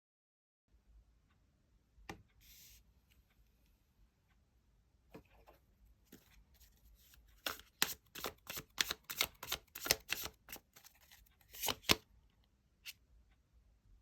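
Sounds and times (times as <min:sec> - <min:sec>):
cards shuffling: 0:06.1 - 0:12.0.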